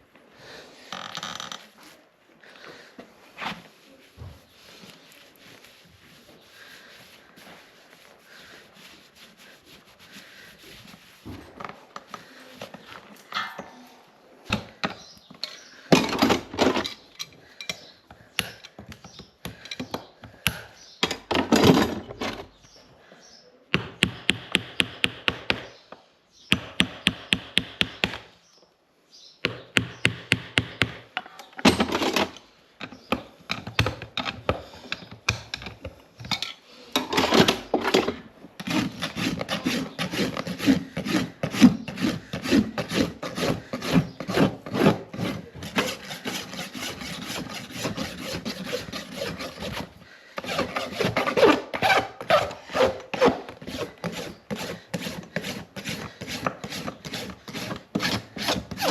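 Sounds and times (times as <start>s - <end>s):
rasp scraping horse hoof: 3.3s - 13.3s, 31.7s - 58.9s.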